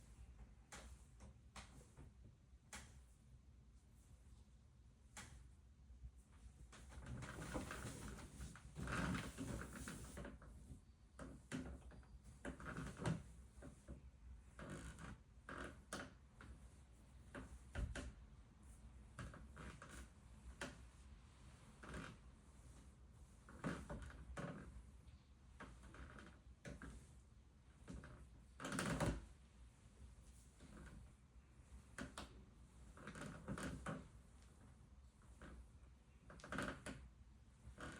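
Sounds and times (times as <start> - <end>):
bunk bed creaking and knocking: 6.3 - 18.3, 23.4 - 29.5, 30.6 - 37.9
bed creaking and knocking: 6.7 - 10.6.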